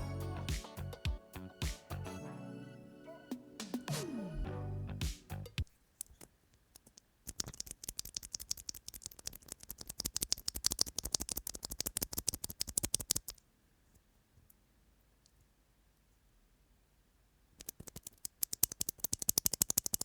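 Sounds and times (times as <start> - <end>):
mechanical keyboard typing: 6.8 - 13.4, 17.6 - 20.0.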